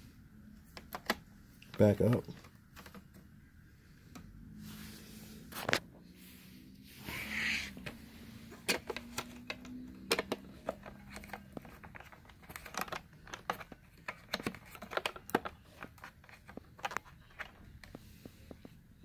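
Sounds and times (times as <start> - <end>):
plastic parts clicking and tapping: 0.7 - 3.3, 8.5 - 18.8
plastic parts scraping: 7.0 - 18.0.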